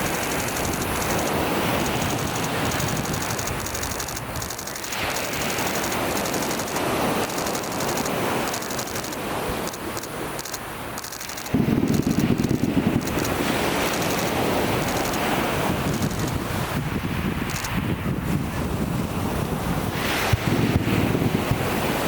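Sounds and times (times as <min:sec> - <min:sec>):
camera shutter rapid clicking: 0:00.0 - 0:16.5, 0:17.4 - 0:17.8
wind noise on microphone: 0:00.0 - 0:22.0.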